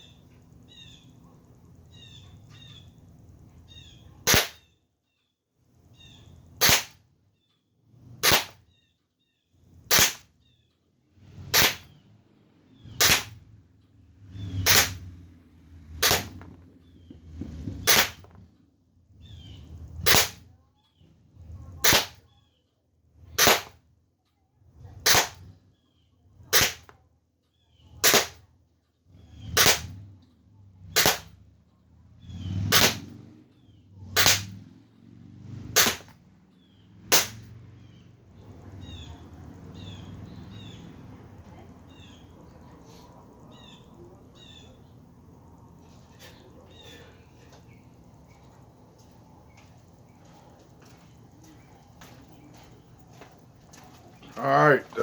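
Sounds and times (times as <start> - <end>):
pellet pistol firing: 4.2 - 4.7, 6.6 - 7.0, 8.2 - 8.6, 9.9 - 10.3, 11.4 - 12.0, 12.9 - 13.4, 14.6 - 15.1, 15.9 - 16.6, 17.7 - 18.4, 20.0 - 20.5, 21.8 - 22.2, 23.3 - 23.8, 25.0 - 25.5, 26.5 - 27.0, 28.0 - 28.4, 29.5 - 30.0, 30.9 - 31.4, 32.6 - 33.2, 34.1 - 34.6, 35.6 - 36.2, 37.1 - 37.5.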